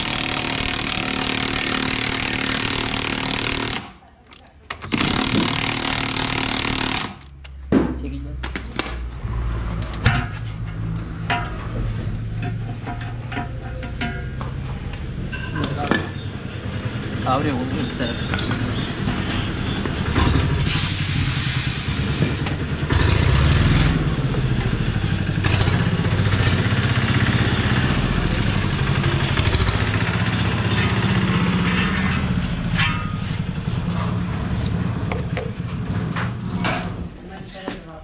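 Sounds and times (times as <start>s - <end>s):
engine running: 9.0s - 37.1s
air hiss: 20.6s - 22.4s.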